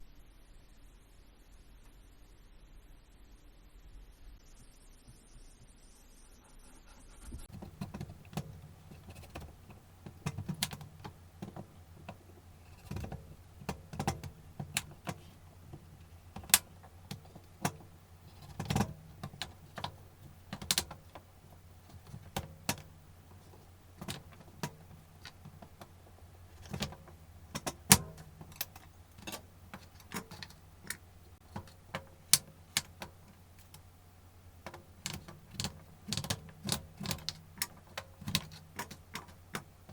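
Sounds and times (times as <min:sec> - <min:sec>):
steady low hum: 0:00.0 - 0:39.9
utensils clicking and knocking: 0:07.5 - 0:33.9, 0:34.5 - 0:39.9.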